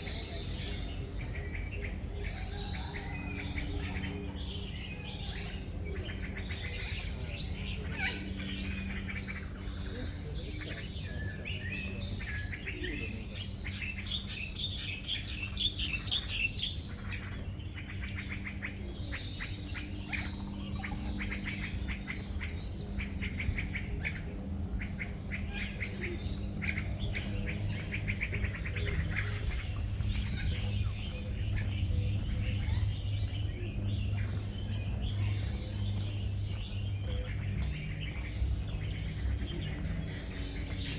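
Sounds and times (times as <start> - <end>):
songbirds chirping and trilling: 0.0 - 40.9
steady low hum: 0.0 - 40.9.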